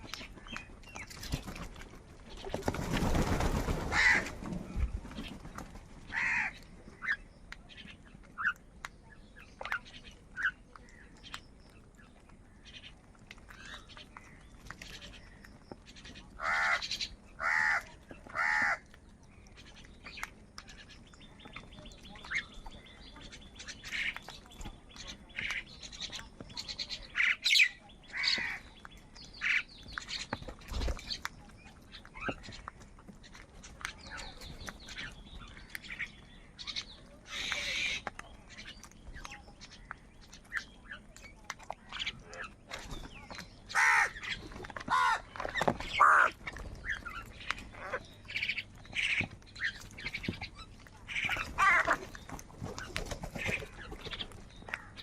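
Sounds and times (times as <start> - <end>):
crows cawing: 3.9 - 4.3, 6.1 - 6.6, 16.4 - 18.9, 43.7 - 44.3, 44.9 - 45.3, 45.9 - 46.4, 51.2 - 52.0.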